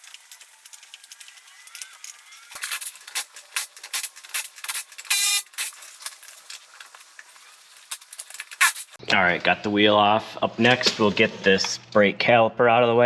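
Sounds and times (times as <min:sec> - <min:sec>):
metal clinks and knocks: 0:00.0 - 0:09.0.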